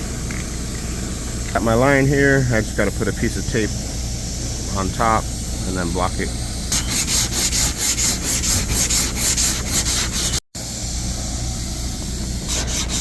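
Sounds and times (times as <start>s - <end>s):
sandpaper rasping on sanding block: 6.7s - 10.4s, 12.5s - 13.0s.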